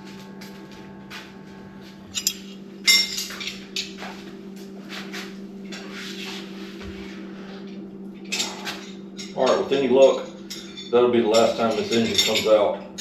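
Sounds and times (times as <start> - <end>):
steady low hum: 0.0 - 13.0
metal tools clinking and clanking: 2.1 - 4.1, 8.3 - 13.0.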